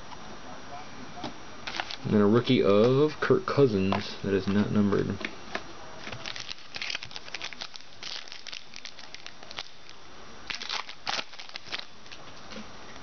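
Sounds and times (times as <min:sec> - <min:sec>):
card wrapper crinkling: 0:01.6 - 0:02.1, 0:06.0 - 0:12.2.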